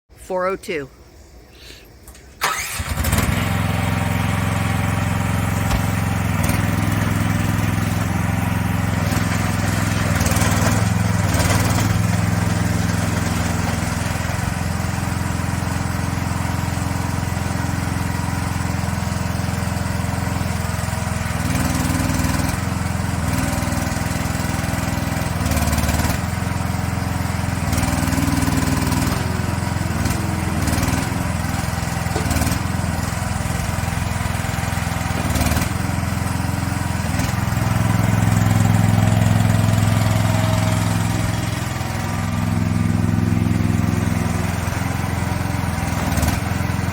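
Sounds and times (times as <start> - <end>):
mini excavator engine running: 1.6 - 46.9.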